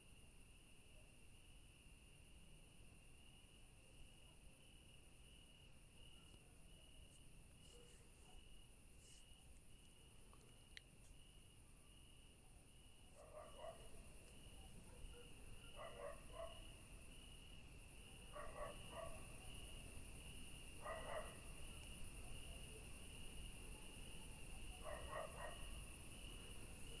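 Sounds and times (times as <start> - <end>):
crickets chirping: 0.0 - 27.0
distant dog barking: 13.1 - 14.0, 14.7 - 16.6, 18.3 - 19.3, 20.8 - 21.5, 24.8 - 25.8.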